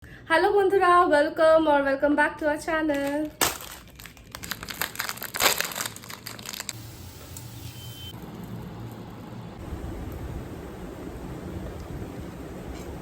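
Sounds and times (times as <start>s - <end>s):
crinkling crackling noises: 2.8s - 6.8s.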